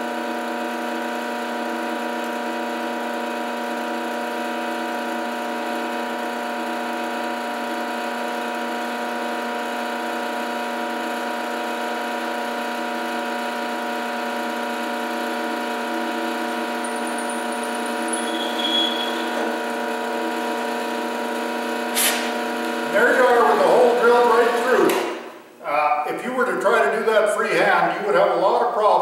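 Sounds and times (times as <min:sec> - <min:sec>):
drill press motor humming: 0:00.1 - 0:25.5
drill bit drilling wood: 0:10.9 - 0:25.2
high squeal: 0:17.0 - 0:19.6.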